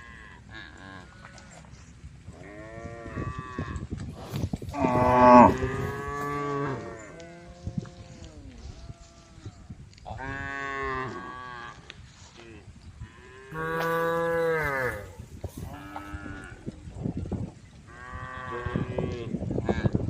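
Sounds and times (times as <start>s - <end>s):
cattle mooing: 4.7s - 7.4s, 13.5s - 16.5s.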